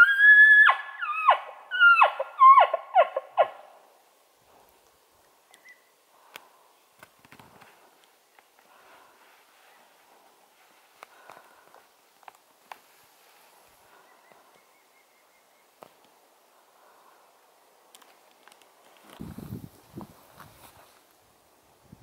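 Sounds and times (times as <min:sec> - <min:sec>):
faint clicks and rustling: 0:04.6 - 0:14.6, 0:17.8 - 0:21.2.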